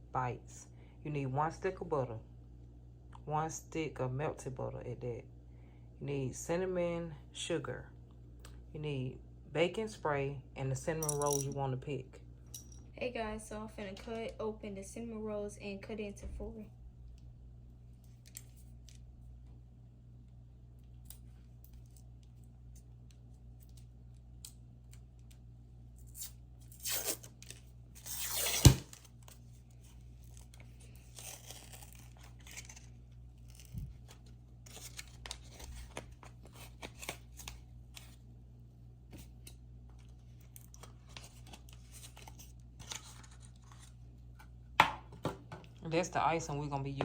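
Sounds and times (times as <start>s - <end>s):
paper wrapper tearing: 30.2s - 37.6s.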